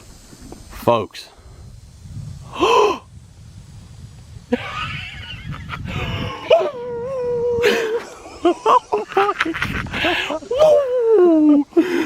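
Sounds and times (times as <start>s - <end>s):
man whooping loudly: 2.6s - 3.1s, 6.4s - 8.0s, 10.3s - 11.7s.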